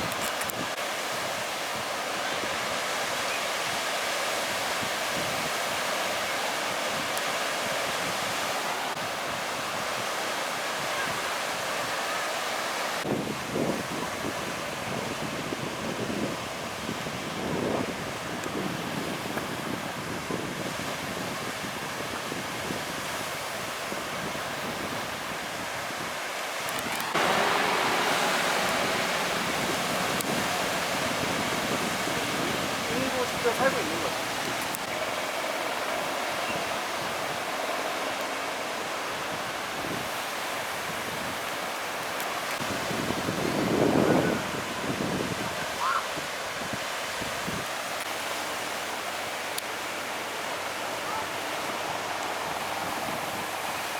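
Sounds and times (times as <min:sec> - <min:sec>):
surf washing onto beach: 0:00.0 - 0:53.9
wind buffeting microphone: 0:13.0 - 0:53.9.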